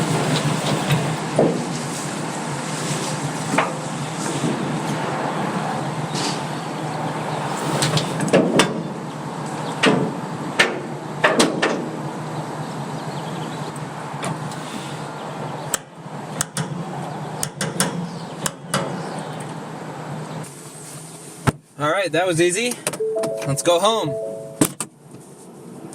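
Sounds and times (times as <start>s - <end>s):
vehicle engine running: 0.0s - 8.2s.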